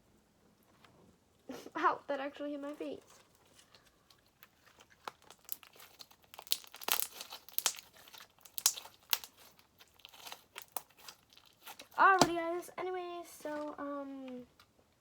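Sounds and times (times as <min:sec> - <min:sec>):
slime crackling and popping: 0:04.1 - 0:12.4.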